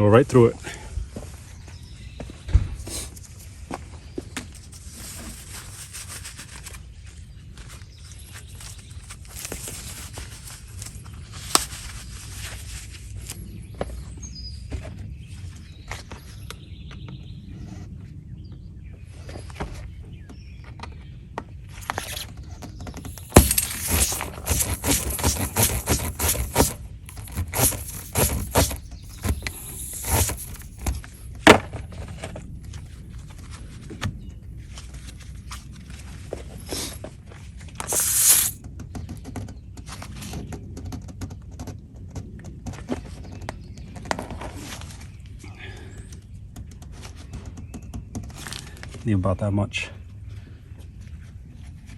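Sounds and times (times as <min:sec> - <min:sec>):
tire plug tool scraping and clicking: 0:21.7 - 0:31.8, 0:37.8 - 0:38.6.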